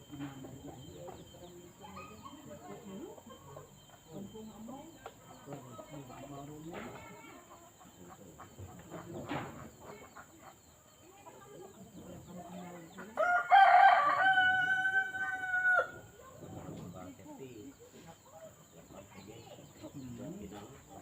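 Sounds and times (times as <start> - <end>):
rooster crowing: 13.1 - 16.2.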